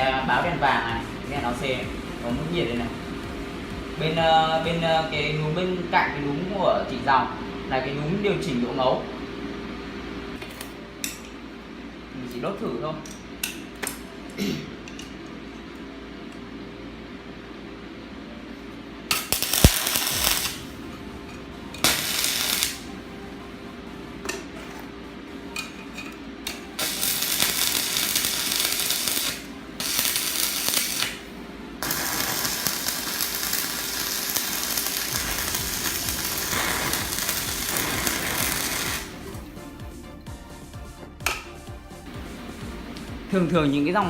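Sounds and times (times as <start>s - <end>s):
welding arc crackling and sizzling: 19.1s - 23.1s, 26.4s - 39.6s.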